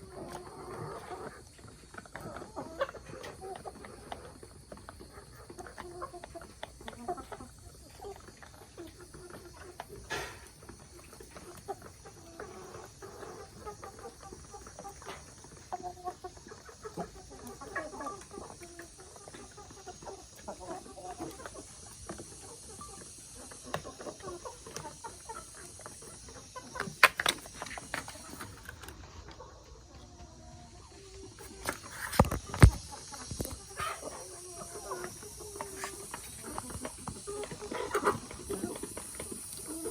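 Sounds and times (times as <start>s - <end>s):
chickens clucking: 0.0s - 39.9s
steady high hiss: 9.9s - 39.9s.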